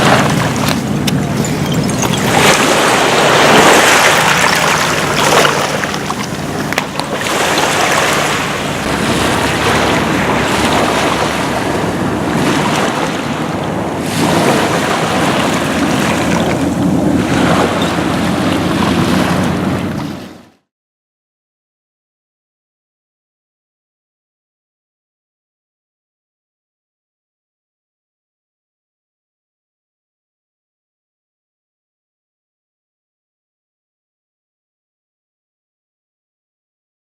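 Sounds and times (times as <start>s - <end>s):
wind buffeting microphone: 0.0s - 20.5s
waves washing onto beach: 0.0s - 20.6s.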